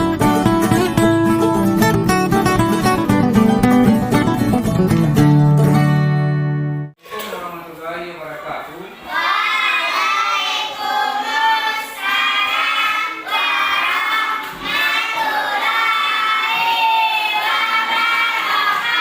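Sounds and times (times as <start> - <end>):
children singing: 9.0 - 19.0.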